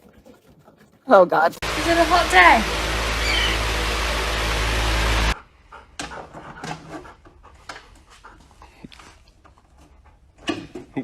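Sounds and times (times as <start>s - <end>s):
loud steady rushing noise: 1.6s - 5.4s
dog panting: 5.4s - 10.4s.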